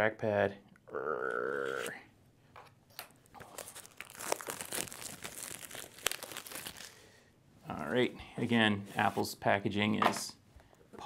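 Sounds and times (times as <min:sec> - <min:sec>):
packaging crinkling and tearing: 0:03.0 - 0:07.0.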